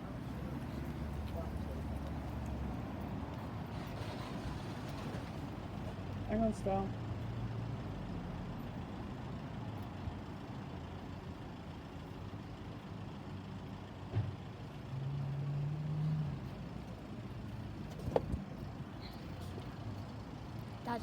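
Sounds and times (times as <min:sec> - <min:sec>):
vehicle low rumble: 0:00.0 - 0:21.0.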